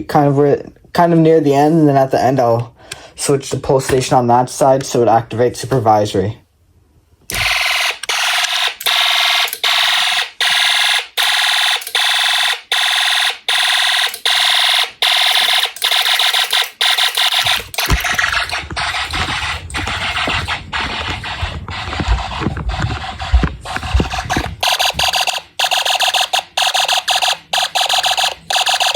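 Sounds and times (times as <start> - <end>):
pulsing electronic alarm buzz: 7.3 - 28.9.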